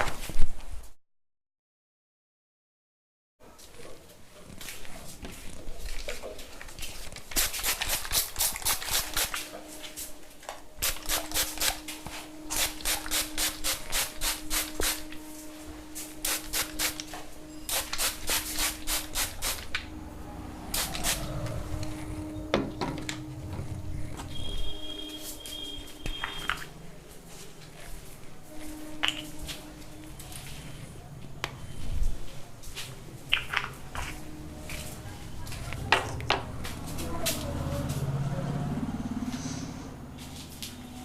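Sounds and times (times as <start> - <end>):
hands rubbing and patting scalp: 6.8 - 10.1, 10.8 - 15.2, 16.0 - 19.8
steady low hum: 9.1 - 41.0.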